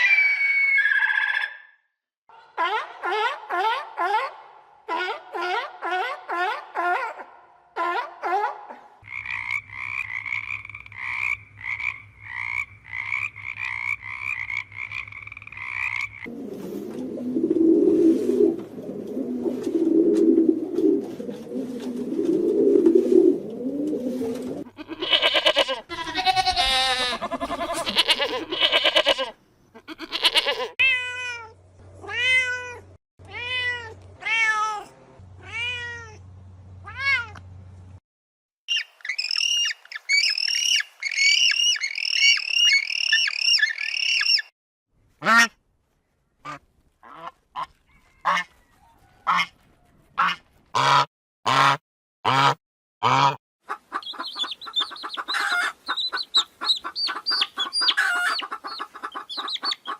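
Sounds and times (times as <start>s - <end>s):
frogs croaking: 9.0s - 16.3s
repeated falling calls: 53.7s - 59.9s
quick bird chirps: 54.0s - 59.9s.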